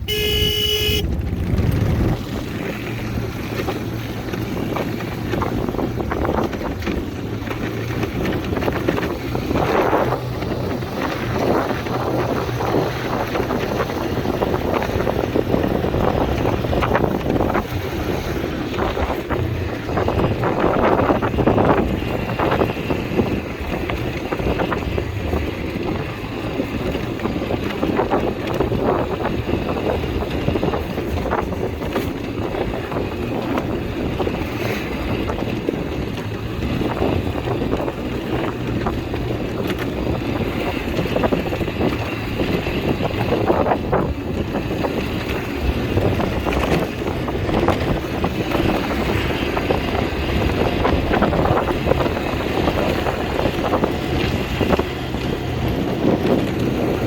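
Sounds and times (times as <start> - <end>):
atv engine running: 0.0 - 57.0
wind buffeting microphone: 0.0 - 57.0.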